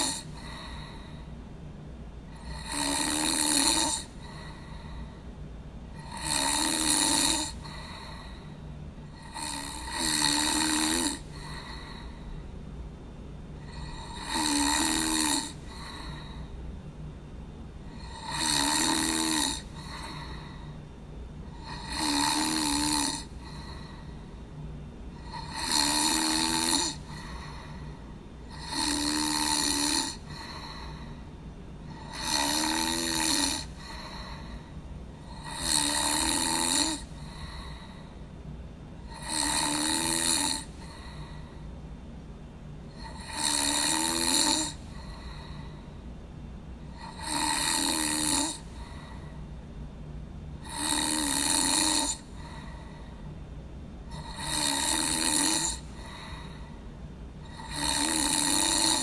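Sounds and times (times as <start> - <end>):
person snoring: 0.0 - 1.3, 2.3 - 5.2, 6.0 - 12.4, 13.6 - 16.5, 17.9 - 20.8, 21.4 - 24.4, 25.1 - 31.2, 31.9 - 38.1, 39.0 - 41.6, 42.9 - 45.8, 46.9 - 49.4, 50.6 - 53.2, 54.1 - 56.7, 57.4 - 59.0
steady low hum: 0.0 - 59.0.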